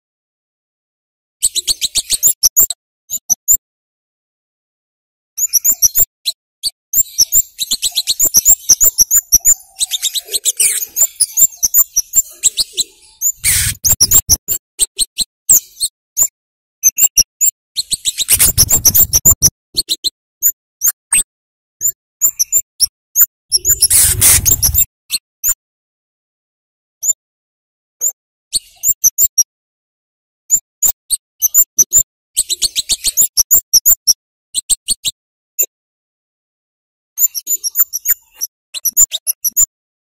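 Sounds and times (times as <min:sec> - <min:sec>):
bird giving sharp chirps: 0:07.0 - 0:14.5, 0:17.8 - 0:19.5, 0:23.5 - 0:24.9
noisy bursts: 0:23.7 - 0:24.8.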